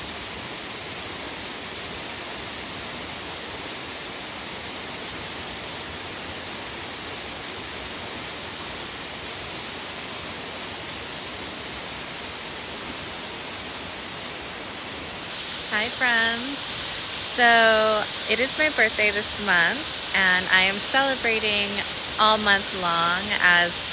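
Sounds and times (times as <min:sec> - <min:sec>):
waterfall rushing: 0:15.1 - 0:23.9.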